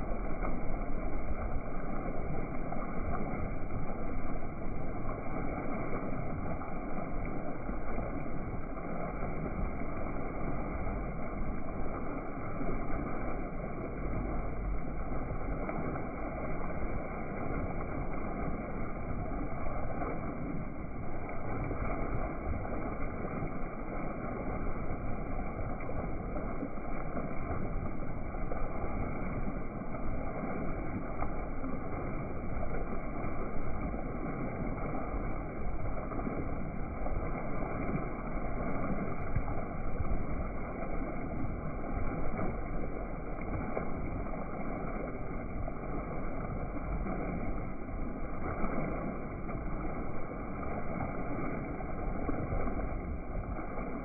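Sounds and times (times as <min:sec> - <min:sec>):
boat under way rushing: 0:00.0 - 0:54.0
water washing past hull: 0:00.0 - 0:54.0.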